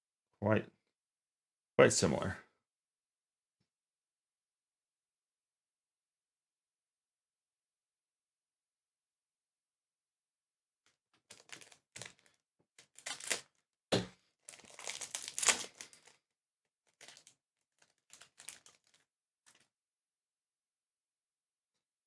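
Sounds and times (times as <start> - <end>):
wrapper crinkling and tearing: 11.3 - 13.6, 14.4 - 16.2, 16.9 - 19.6.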